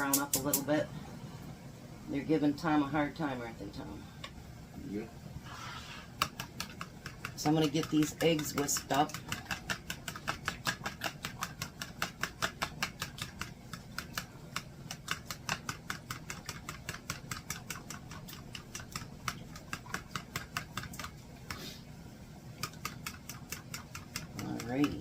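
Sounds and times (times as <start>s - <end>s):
whisk clicking against bowl: 6.1s - 21.6s, 22.6s - 25.0s.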